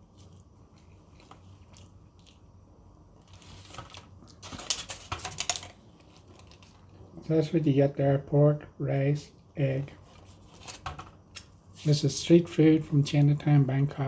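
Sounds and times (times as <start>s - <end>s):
crinkling: 0.0s - 7.2s
faint low hum: 0.0s - 14.0s.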